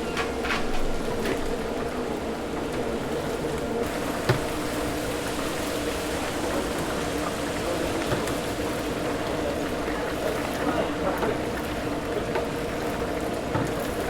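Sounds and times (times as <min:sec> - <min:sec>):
oil bubbling sizzle: 0:03.8 - 0:14.0.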